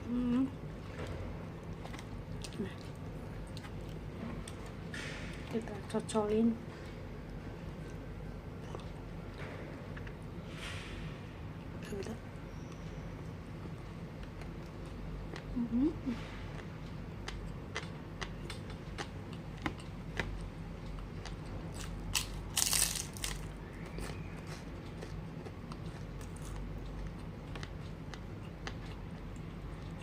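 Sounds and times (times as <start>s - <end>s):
steady low hum: 0.0s - 30.0s
chewing crunches and mouth clicks: 1.0s - 5.4s, 6.7s - 10.3s, 16.2s - 30.0s.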